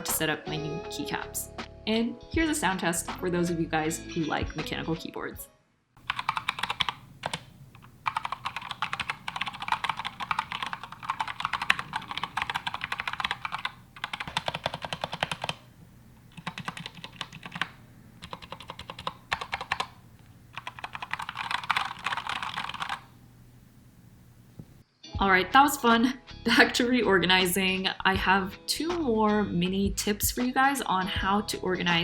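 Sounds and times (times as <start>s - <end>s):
mechanical keyboard clacking: 6.0s - 15.7s, 16.3s - 23.1s.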